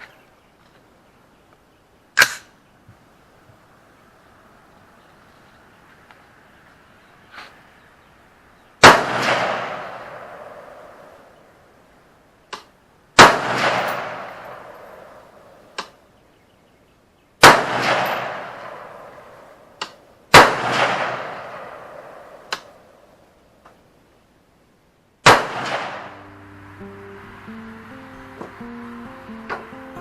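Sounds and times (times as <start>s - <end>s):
fainter distant gunshot cracks: 8.8s - 11.2s, 13.2s - 15.2s, 17.4s - 19.4s, 20.3s - 22.8s, 25.2s - 26.2s
rifle shots with echo: 8.8s - 11.3s, 13.2s - 15.8s, 17.4s - 19.7s, 20.3s - 22.8s, 25.2s - 26.2s.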